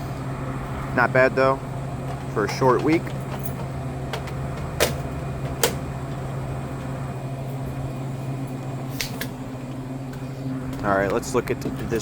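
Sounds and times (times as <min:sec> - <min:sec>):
steady low hum: 0:00.0 - 0:12.0
vending machine parts clicking: 0:02.1 - 0:05.9.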